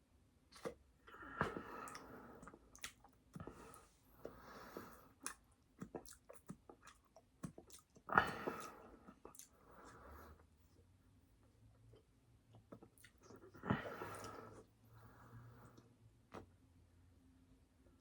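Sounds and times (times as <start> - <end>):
close-up chewing: 1.4 - 10.2, 12.5 - 14.7
wet mouth clicks and smacks: 2.7 - 3.1.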